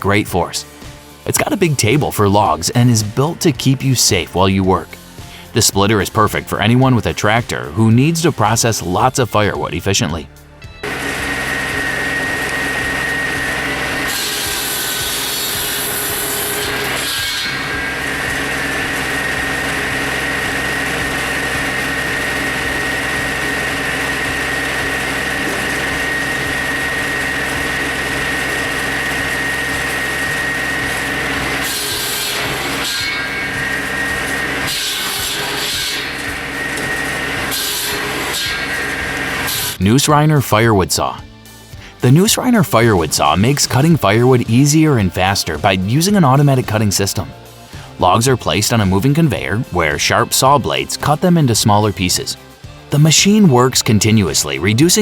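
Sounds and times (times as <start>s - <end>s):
machine hum: 10.8s - 39.8s
wood rasping: 10.8s - 39.8s.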